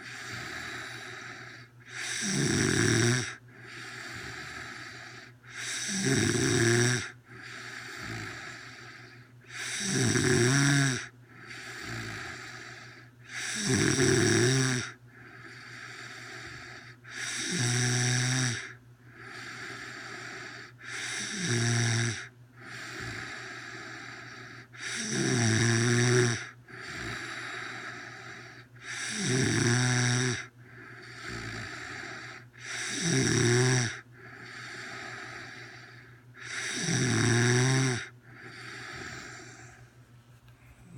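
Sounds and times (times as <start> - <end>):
soft breathing: 0.0 - 2.0, 3.3 - 5.6, 7.1 - 9.5, 11.2 - 13.3, 15.0 - 17.2, 22.6 - 24.8, 26.6 - 29.0, 30.5 - 32.7, 34.0 - 36.6, 38.1 - 40.9
woman snoring loudly: 0.0 - 35.8, 36.4 - 39.8.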